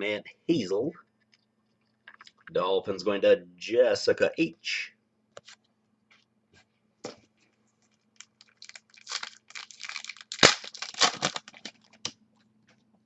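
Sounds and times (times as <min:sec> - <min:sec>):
faint electrical hum: 0:00.0 - 0:13.0
wrapper tearing and crinkling: 0:08.2 - 0:12.1.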